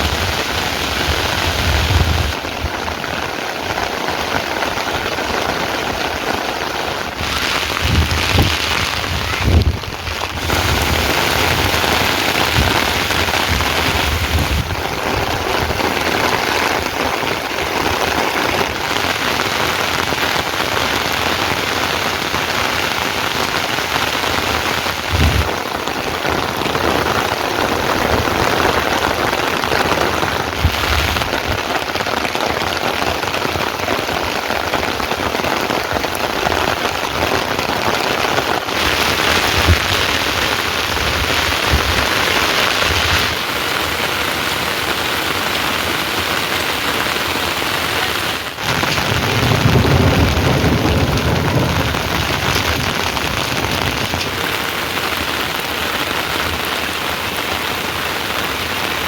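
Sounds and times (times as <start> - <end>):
heavy rain pouring: 0.0 - 59.0
low rumble: 25.1 - 25.7.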